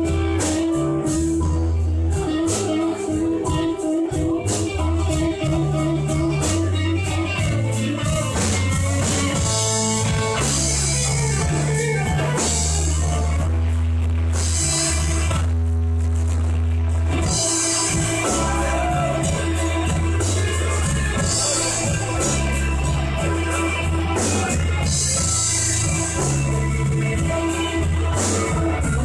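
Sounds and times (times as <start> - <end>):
slow blues band playing: 0.0 - 29.0
repeated guitar note: 16.3 - 29.0.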